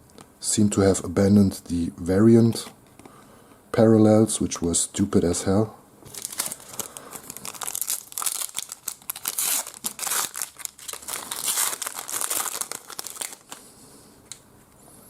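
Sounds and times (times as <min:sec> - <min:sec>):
card pack wrapper crinkling: 0:06.0 - 0:13.7.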